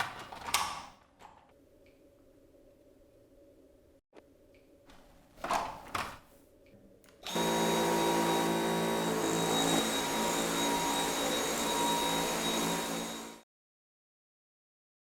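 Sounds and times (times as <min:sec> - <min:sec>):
cordless vacuum whining: 0:07.2 - 0:13.4.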